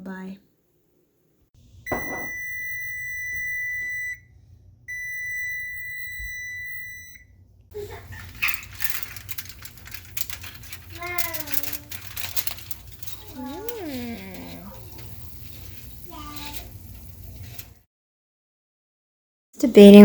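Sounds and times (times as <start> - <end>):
high-pitched electronic beeps: 1.9 - 4.2
clattering noise: 7.8 - 17.8.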